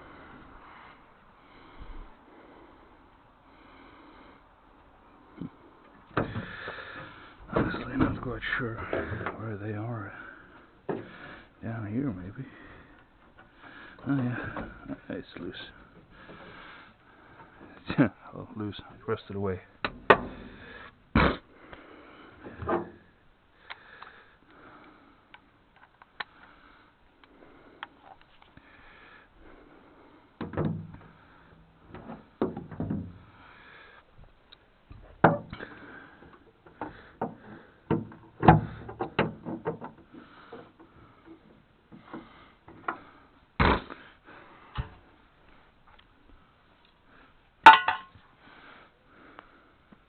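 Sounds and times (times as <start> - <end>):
sharp metal impacts: 47.6 - 48.2
tools knocking on rusted metal: 47.7 - 48.2.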